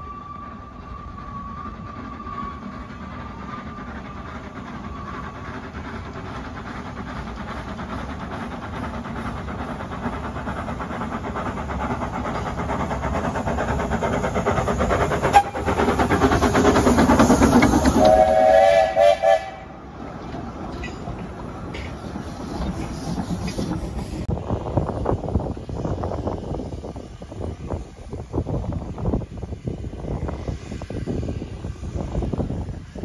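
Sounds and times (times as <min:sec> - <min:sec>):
steam locomotive exhaust beats: 0:00.0 - 0:33.0
steam whistle blasts: 0:15.3 - 0:15.6, 0:17.9 - 0:19.8.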